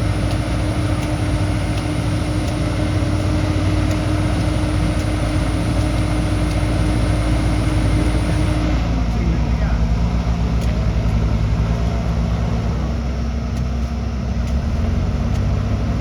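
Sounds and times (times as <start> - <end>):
heavy diesel engine humming: 0.0 - 16.0.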